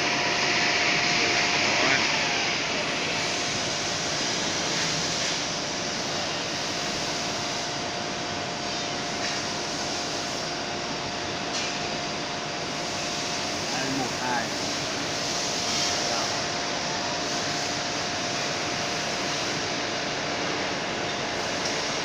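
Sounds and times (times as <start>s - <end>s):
constant machine whine: 0.0s - 22.0s
machinery hum and hiss: 0.0s - 22.0s.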